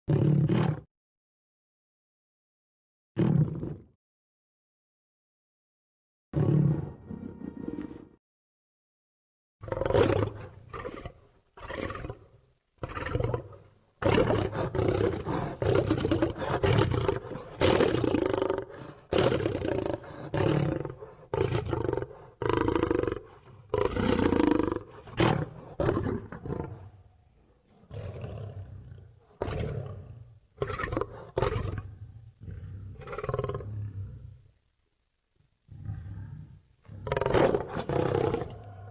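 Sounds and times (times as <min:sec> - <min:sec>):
lion-like roars and growls: 0:00.1 - 0:00.9, 0:06.4 - 0:08.2, 0:09.6 - 0:34.4, 0:35.7 - 0:38.9.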